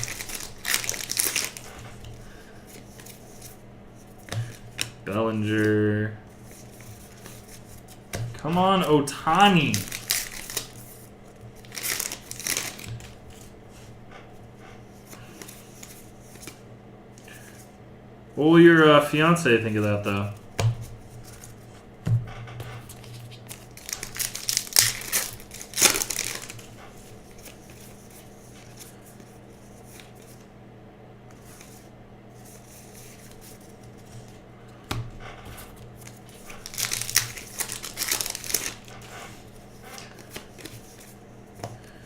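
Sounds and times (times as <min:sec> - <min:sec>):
wrapper crinkling and tearing: 0:00.0 - 0:01.9, 0:08.6 - 0:10.9, 0:11.6 - 0:13.4, 0:23.0 - 0:27.6, 0:36.0 - 0:41.1
steady low hum: 0:00.0 - 0:42.0.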